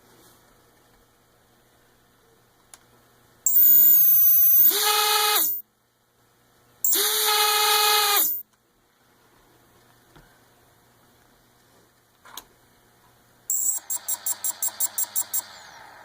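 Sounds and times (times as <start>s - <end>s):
small motor whining: 3.5s - 5.6s, 6.9s - 8.4s, 13.5s - 16.0s.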